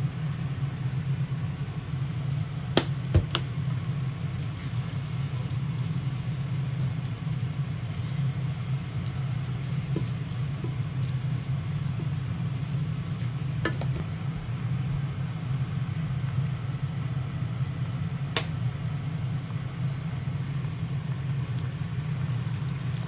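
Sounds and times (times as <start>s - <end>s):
meat sizzling in a pan: 0.0s - 14.0s.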